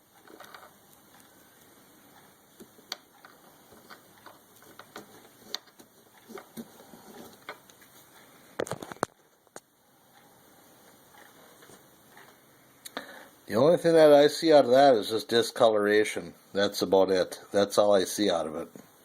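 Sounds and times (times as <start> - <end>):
clicks and crackles: 0.1 - 13.0.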